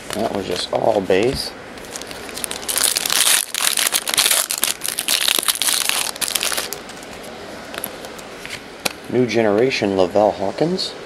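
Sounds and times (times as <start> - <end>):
plastic wrapper crinkling: 1.8 - 7.2.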